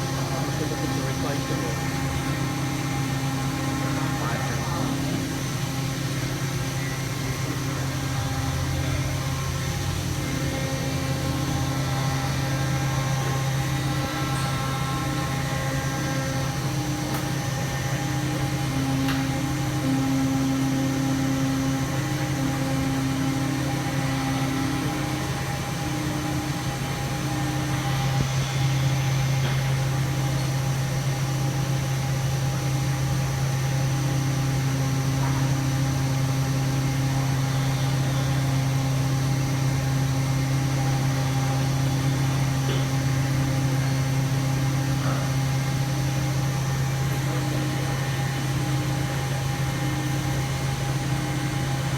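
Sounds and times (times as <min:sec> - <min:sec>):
constant high whine: 0:00.0 - 0:51.9
machine electrical hum: 0:00.0 - 0:51.9.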